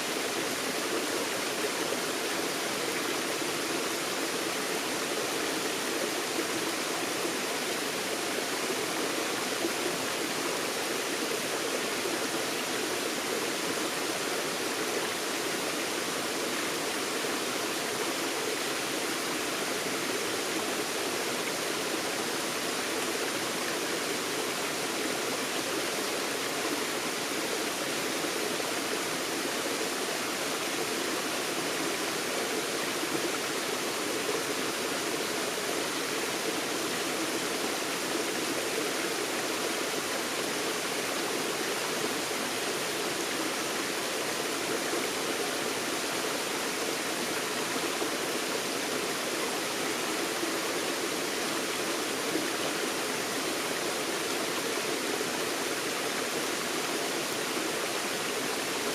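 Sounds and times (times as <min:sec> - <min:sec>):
stream running over rocks: 0:00.0 - 0:58.9.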